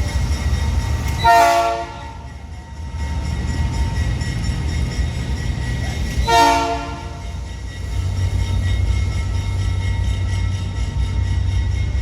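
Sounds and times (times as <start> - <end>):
diesel locomotives rumbling: 0.0 - 12.0
train horn blast: 1.2 - 2.2, 6.2 - 7.2.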